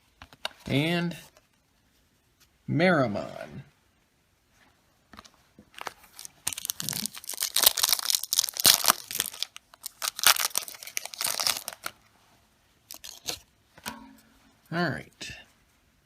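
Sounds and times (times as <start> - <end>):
wrapper tearing and crinkling: 5.8 - 12.0, 12.9 - 13.4.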